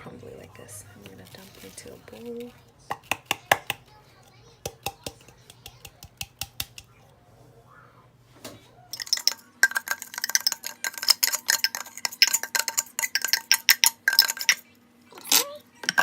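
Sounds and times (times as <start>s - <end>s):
utensil clinking against bowl: 8.9s - 16.0s.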